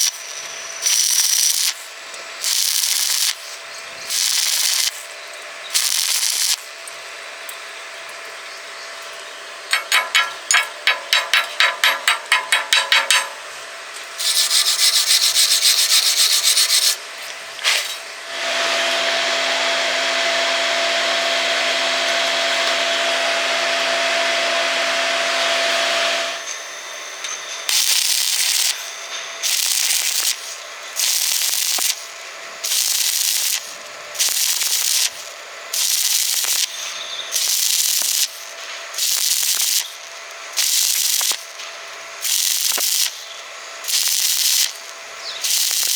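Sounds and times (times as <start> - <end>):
metalworking tool hissing: 0.0 - 6.7, 9.7 - 13.4, 14.2 - 18.2, 25.8 - 45.9
metalworking tool clicks: 9.7 - 13.4.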